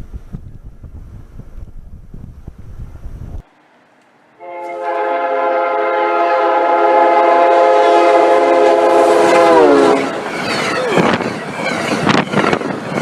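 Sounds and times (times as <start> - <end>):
wind buffeting microphone: 0.0 - 3.4, 7.7 - 13.0
locomotive air horn chord: 4.4 - 10.2.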